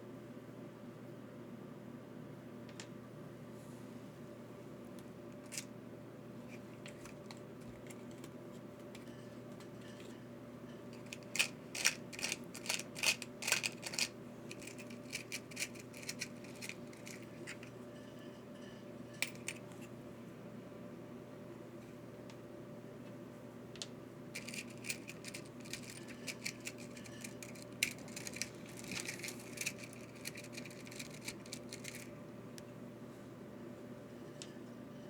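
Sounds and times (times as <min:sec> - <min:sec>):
low room hum: 0:00.0 - 0:35.0
metal screws clicking and rattling: 0:11.0 - 0:17.7, 0:24.4 - 0:32.1.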